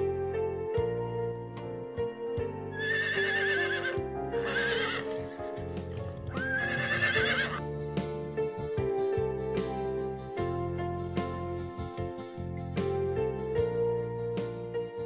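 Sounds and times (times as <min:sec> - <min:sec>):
soft keyboard music: 0:00.0 - 0:15.0
horse whinnying: 0:02.7 - 0:05.4, 0:06.0 - 0:07.6.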